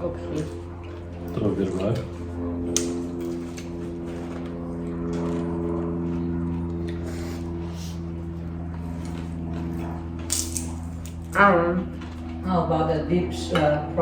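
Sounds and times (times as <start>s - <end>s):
steady low hum: 0.0s - 14.0s
people chewing food: 0.3s - 11.3s.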